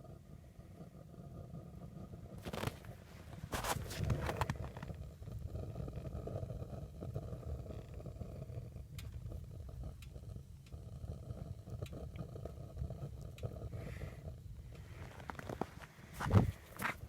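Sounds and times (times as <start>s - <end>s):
burner flame rumbling: 0.0s - 17.0s
faint ticks: 7.7s - 13.9s.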